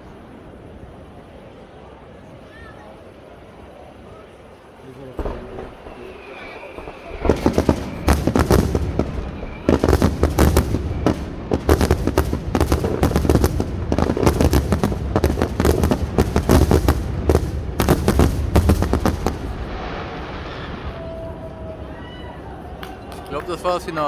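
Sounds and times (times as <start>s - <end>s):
fireworks bursts and crackling bangs: 4.8s - 24.0s
deep rumble: 5.2s - 21.8s.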